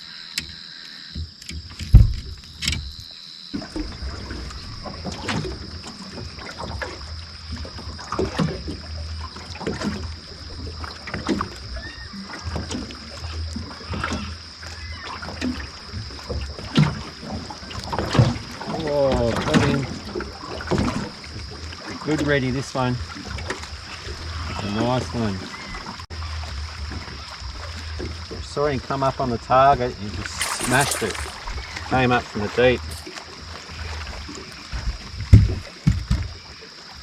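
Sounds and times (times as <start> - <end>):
water lapping against boat hull: 3.6 - 26.0
high insect buzz: 30.2 - 31.7, 32.6 - 33.2.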